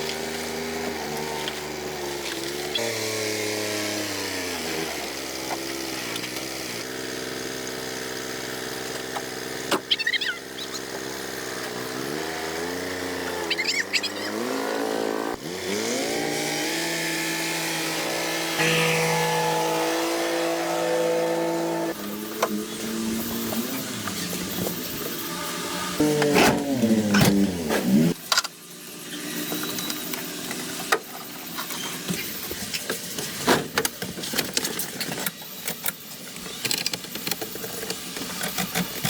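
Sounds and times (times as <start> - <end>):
motor running: 5.1 - 16.8
short high squeaks: 9.8 - 11.0, 13.4 - 14.6.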